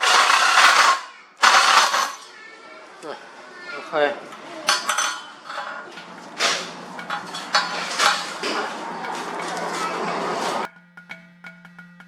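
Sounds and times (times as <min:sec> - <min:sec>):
metal pieces clinking: 0:00.0 - 0:02.3, 0:04.7 - 0:08.4.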